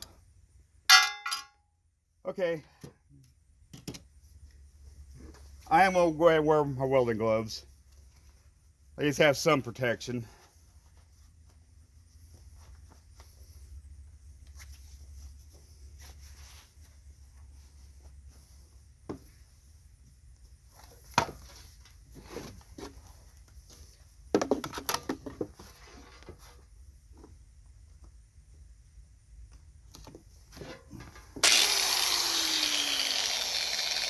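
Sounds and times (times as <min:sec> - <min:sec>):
tools and metal clattering: 0:00.9 - 0:01.6.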